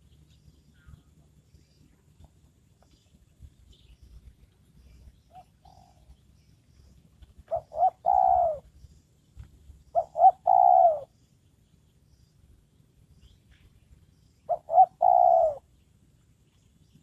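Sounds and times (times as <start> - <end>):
dove cooing: 5.3 - 6.1, 7.4 - 8.7, 9.9 - 11.1, 14.5 - 15.7.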